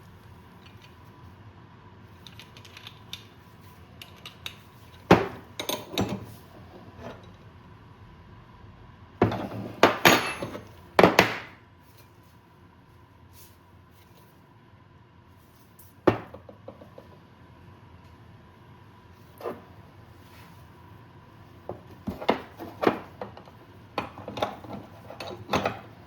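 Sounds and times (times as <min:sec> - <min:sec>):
metal tools clinking and clanking: 0:05.6 - 0:06.4, 0:09.9 - 0:10.7.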